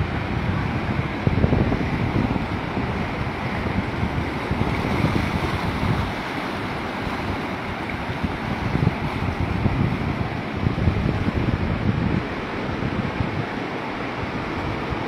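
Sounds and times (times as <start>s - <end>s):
floodwater rushing: 0.0s - 15.0s
wind buffeting microphone: 0.0s - 15.0s.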